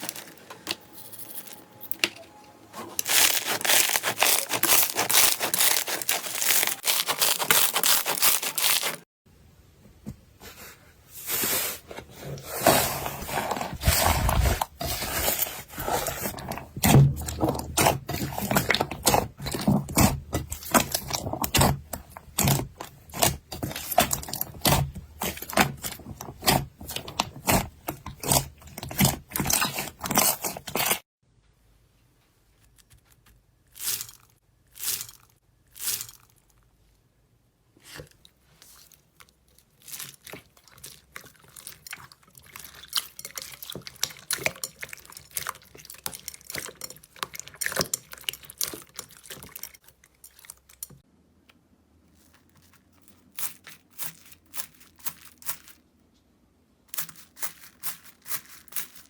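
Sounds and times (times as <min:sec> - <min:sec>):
slime crunching: 0:02.8 - 0:09.0, 0:12.5 - 0:31.0, 0:37.8 - 0:51.0.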